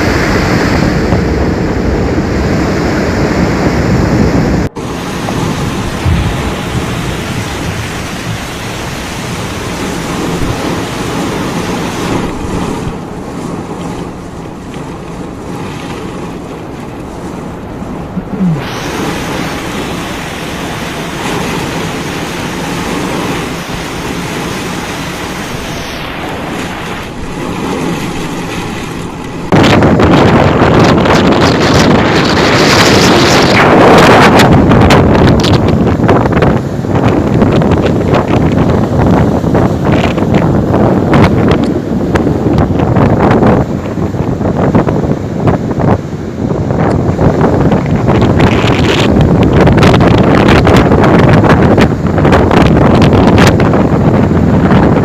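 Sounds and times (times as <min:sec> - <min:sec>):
floodwater rushing: 0:00.0 - 0:55.0
heavy rain: 0:01.3 - 0:34.9.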